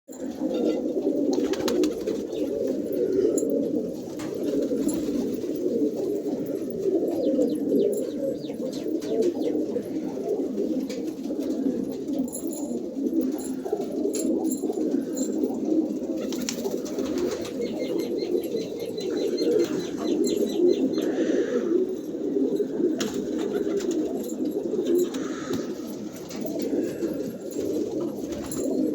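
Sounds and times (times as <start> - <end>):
pigeons cooing: 0.1 - 28.9.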